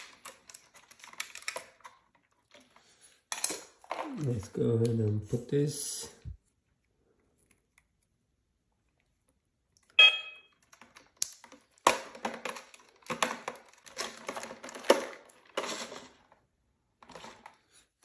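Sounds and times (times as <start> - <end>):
plastic parts clicking and rustling: 0.0 - 5.4, 10.5 - 18.0.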